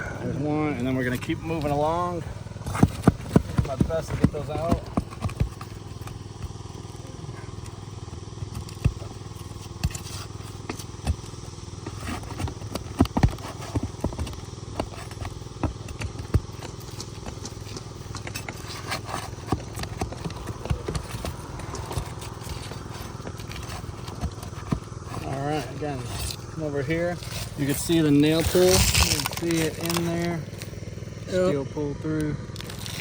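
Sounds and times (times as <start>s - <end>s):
steady low rumble: 0.0s - 9.6s.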